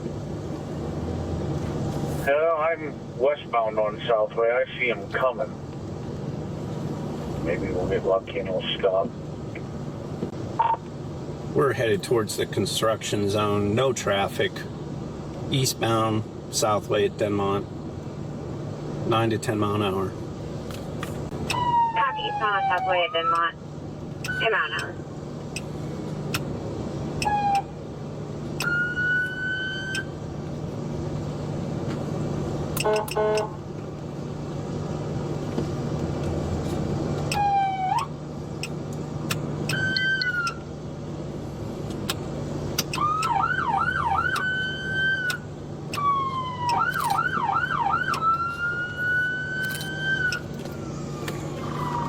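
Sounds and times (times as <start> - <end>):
police siren: 21.5 - 23.6, 27.2 - 27.8, 28.6 - 30.1, 37.3 - 38.2, 39.7 - 40.6, 43.0 - 52.0.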